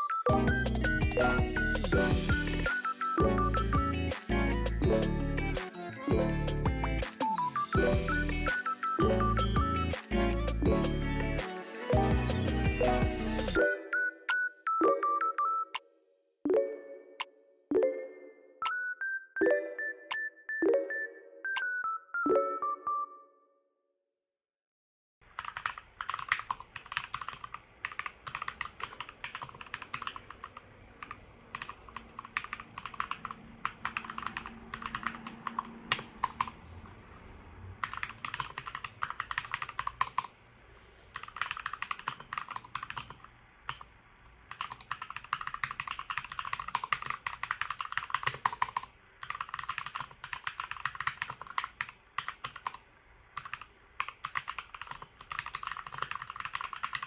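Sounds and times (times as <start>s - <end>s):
mechanical keyboard typing: 25.3s - 36.6s, 37.8s - 40.4s, 41.1s - 43.9s, 44.5s - 57.0s.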